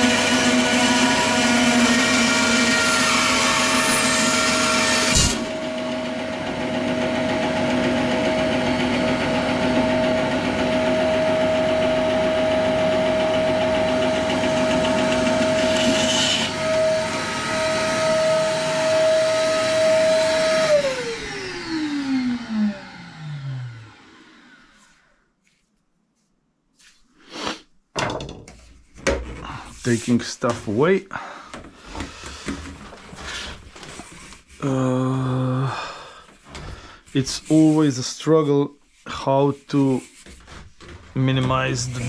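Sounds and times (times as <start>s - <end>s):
belt grinder motor: 0.0s - 6.2s, 10.8s - 24.7s, 41.5s - 42.0s
grinding noise: 41.1s - 42.0s.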